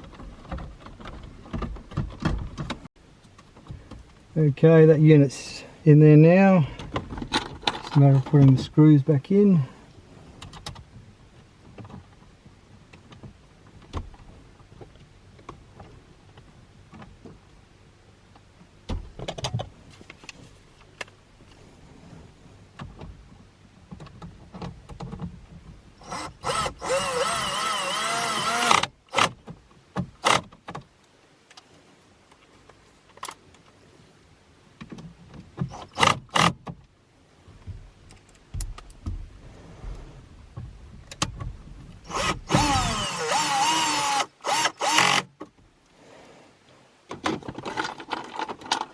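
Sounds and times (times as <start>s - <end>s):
cordless screwdriver motor: 26.0s - 29.3s, 42.1s - 45.3s
screws and tools clicking: 26.0s - 29.3s, 42.1s - 45.3s.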